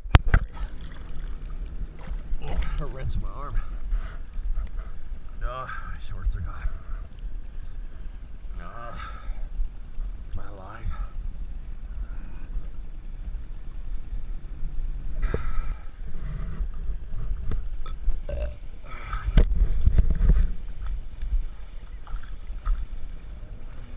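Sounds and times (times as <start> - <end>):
rushing water surges: 0.0 - 3.9
wind on microphone: 0.0 - 23.9.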